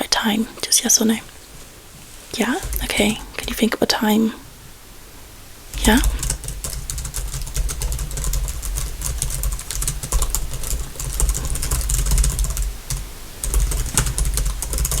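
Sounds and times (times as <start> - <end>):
fast typing on a keyboard: 2.5 - 3.7, 5.7 - 15.0
low thud: 13.8 - 14.4.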